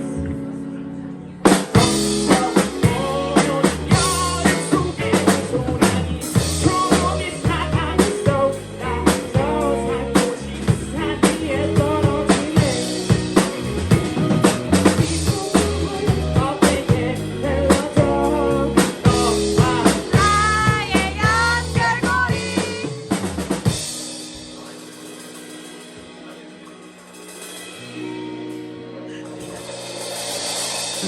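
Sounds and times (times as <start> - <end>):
drum kit: 1.4 - 31.0
live band playing: 1.4 - 31.0.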